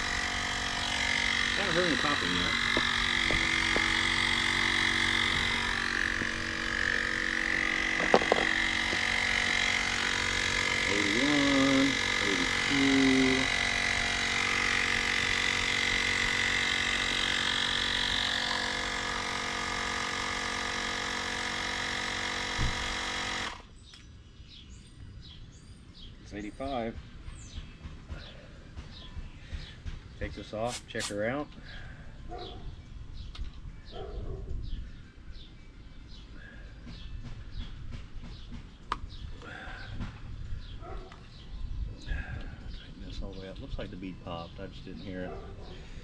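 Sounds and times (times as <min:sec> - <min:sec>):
electric tire inflator running: 0:00.0 - 0:23.8, 0:30.7 - 0:31.8.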